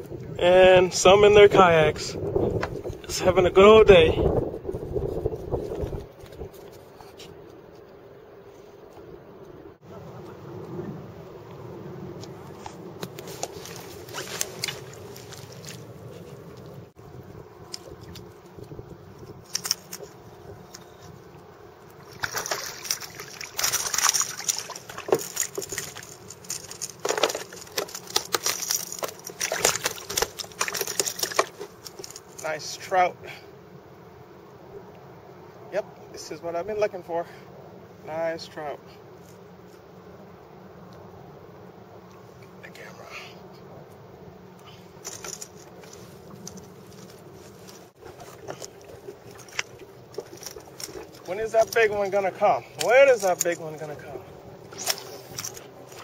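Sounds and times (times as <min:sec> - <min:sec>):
water splashing against kayak: 0:13.0 - 0:16.7, 0:22.0 - 0:32.4.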